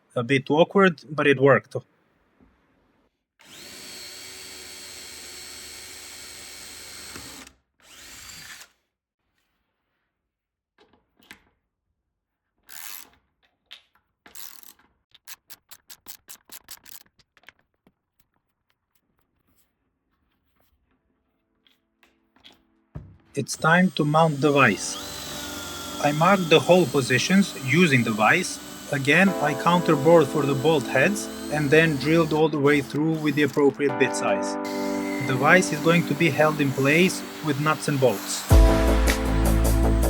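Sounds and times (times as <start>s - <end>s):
electric drill boring into wood: 3.4s - 8.8s, 23.4s - 40.0s.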